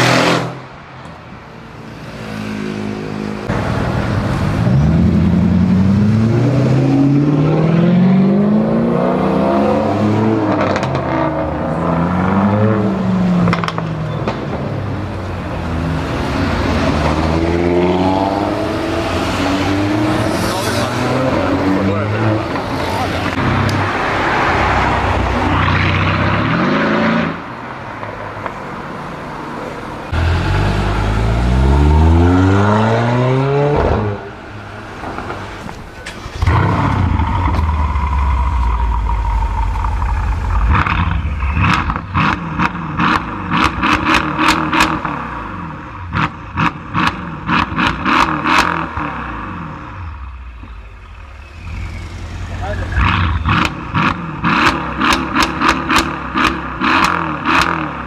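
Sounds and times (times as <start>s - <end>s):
car engine accelerating and revving: 3.4s - 13.9s, 15.6s - 27.5s, 30.0s - 58.0s
exhaust pops and crackles: 53.0s - 57.8s.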